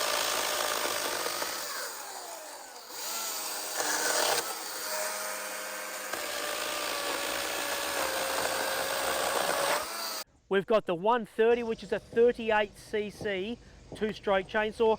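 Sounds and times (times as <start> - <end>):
chainsaw cutting wood: 0.0 - 10.2.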